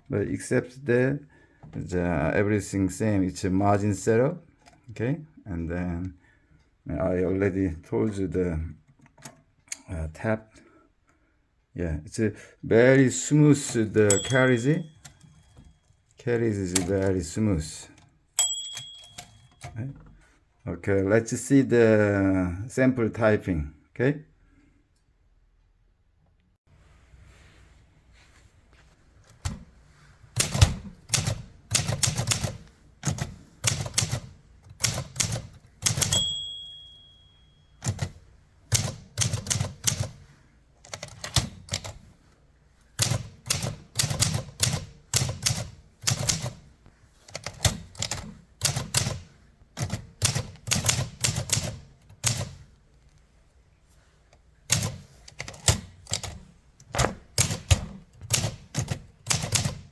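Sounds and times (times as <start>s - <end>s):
typewriter keystrikes: 13.6s - 15.6s, 16.7s - 17.2s, 18.4s - 19.8s, 30.4s - 37.1s, 37.8s - 40.3s, 40.9s - 42.0s, 43.0s - 46.6s, 47.3s - 52.6s, 54.7s - 59.9s
typewriter margin bell ringing: 13.6s - 16.0s, 18.4s - 19.8s, 35.0s - 38.1s.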